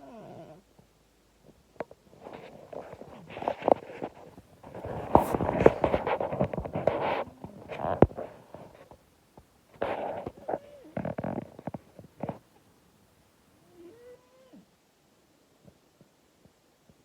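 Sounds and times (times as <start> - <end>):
cat snoring: 0.0 - 0.6.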